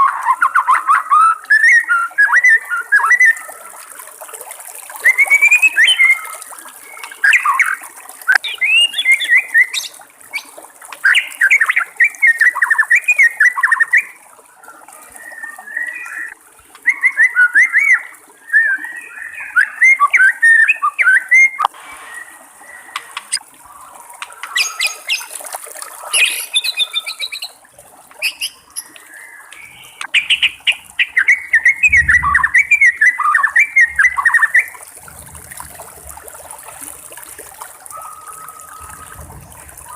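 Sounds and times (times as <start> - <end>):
bird singing whistled phrases: 0.0 - 3.6, 5.0 - 14.2, 15.0 - 23.4, 26.1 - 27.6, 28.2 - 34.8, 37.9 - 39.9.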